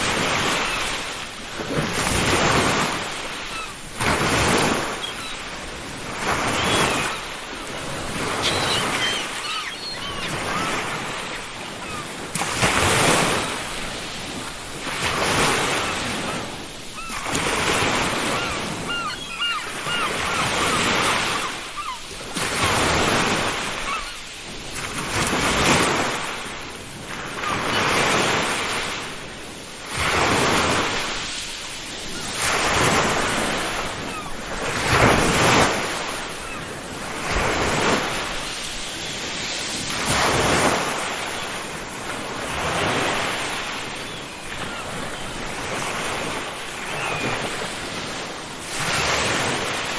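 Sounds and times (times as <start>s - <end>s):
ocean surf breaking on beach: 0.0s - 49.9s
seagulls calling: 0.1s - 1.2s, 2.6s - 13.9s, 15.4s - 24.3s, 32.2s - 38.0s, 42.9s - 47.8s.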